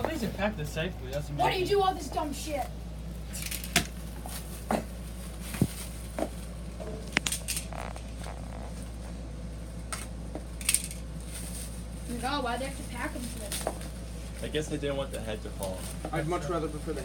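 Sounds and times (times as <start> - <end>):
steady low hum: 0.0 - 17.0
plastic packaging rustling: 3.5 - 9.0, 10.8 - 14.4.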